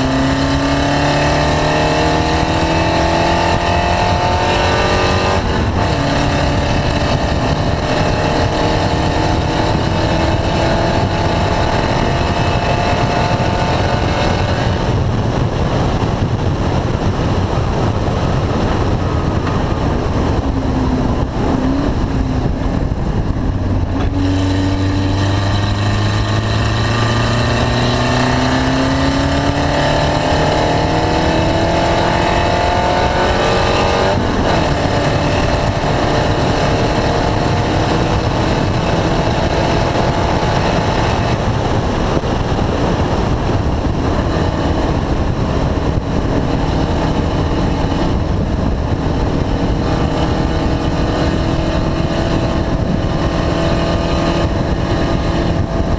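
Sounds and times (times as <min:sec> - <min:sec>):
race car engine accelerating: 0:00.0 - 0:55.9.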